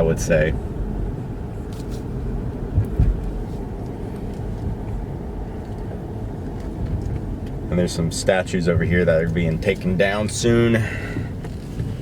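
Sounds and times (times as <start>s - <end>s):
car engine and road noise: 0.0s - 12.0s
low thumps: 2.6s - 3.4s.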